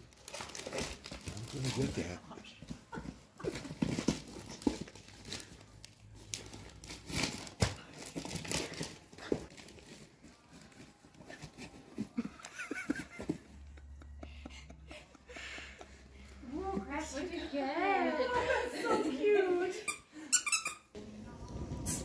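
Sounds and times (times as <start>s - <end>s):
wrapping paper tearing and crumpling: 0.0s - 2.2s, 4.2s - 9.9s.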